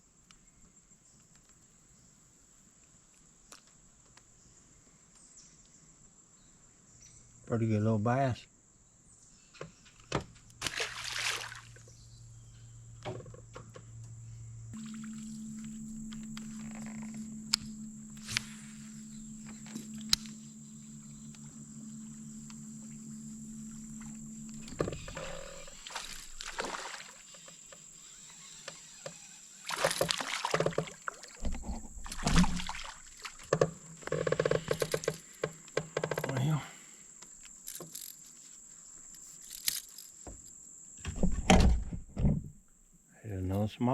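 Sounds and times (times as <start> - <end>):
electric motor humming: 14.0 - 30.2
knocks and rustles against boat: 29.8 - 36.4, 39.7 - 42.6.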